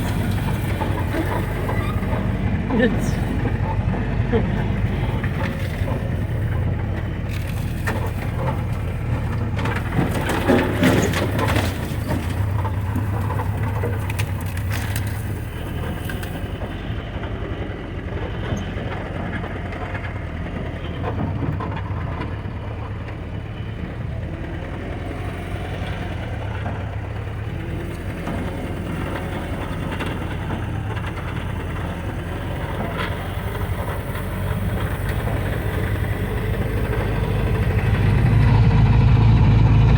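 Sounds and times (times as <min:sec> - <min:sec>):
car engine running: 0:00.0 - 0:39.9.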